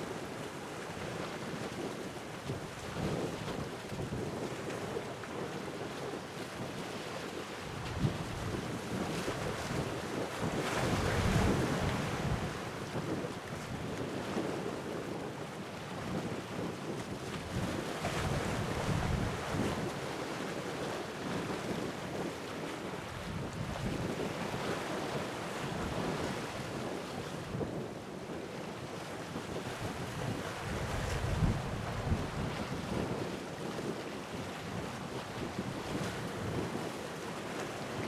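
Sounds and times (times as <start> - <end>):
wind rumbling on microphone: 1.2 - 38.0.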